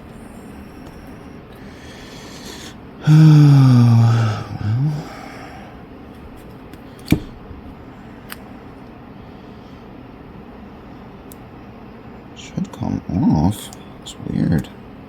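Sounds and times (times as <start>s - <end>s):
room hiss: 0.0s - 6.1s.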